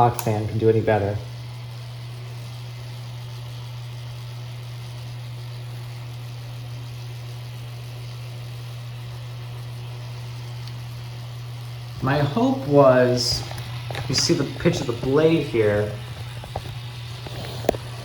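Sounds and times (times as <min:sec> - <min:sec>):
desk fan motor hum: 0:00.0 - 0:18.0
air rushing from fan: 0:11.7 - 0:18.0.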